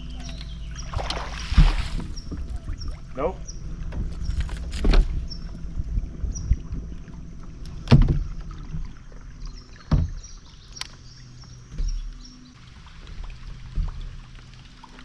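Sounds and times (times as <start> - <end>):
low steady rumble: 0.0 - 15.0
knocks against kayak hull: 1.0 - 2.8, 7.8 - 8.9, 9.9 - 10.2.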